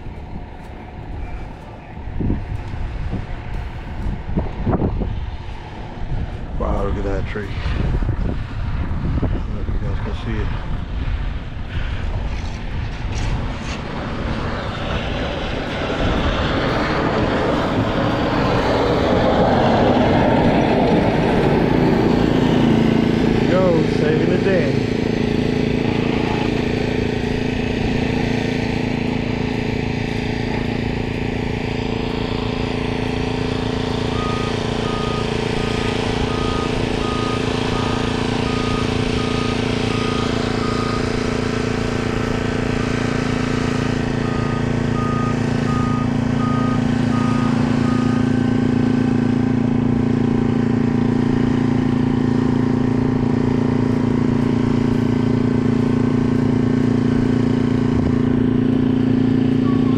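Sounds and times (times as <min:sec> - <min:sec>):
heavy truck engine running: 0:00.0 - 0:59.9
reversing alarm beeps: 0:34.1 - 0:35.5, 0:36.1 - 0:41.3, 0:44.2 - 0:48.6, 0:59.6 - 0:59.9.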